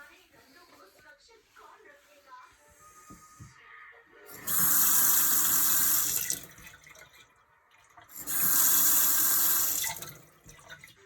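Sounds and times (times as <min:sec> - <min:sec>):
faucet water running into sink: 0:04.3 - 0:11.0.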